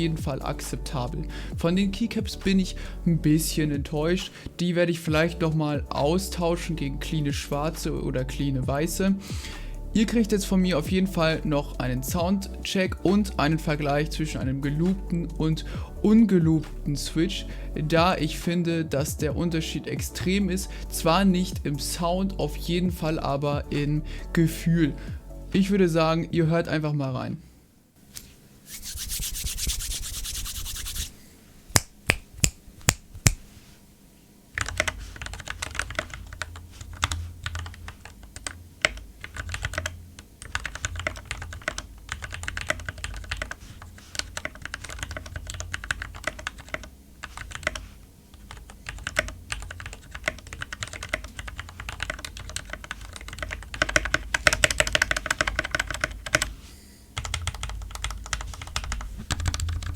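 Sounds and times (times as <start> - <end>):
steady hiss: 27.3 - 59.9
mechanical keyboard typing: 34.6 - 47.8, 48.4 - 56.5, 57.2 - 59.9.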